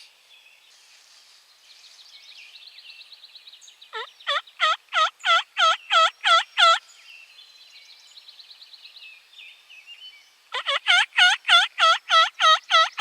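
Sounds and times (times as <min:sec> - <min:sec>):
turkey yelps: 0:04.0 - 0:06.8, 0:10.5 - 0:13.0.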